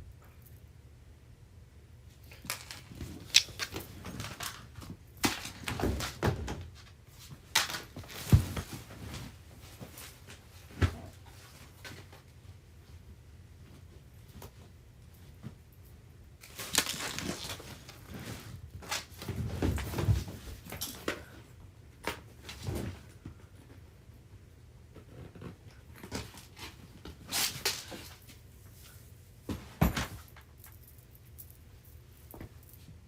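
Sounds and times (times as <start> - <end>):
belongings rustling and clicking: 2.1 - 12.3.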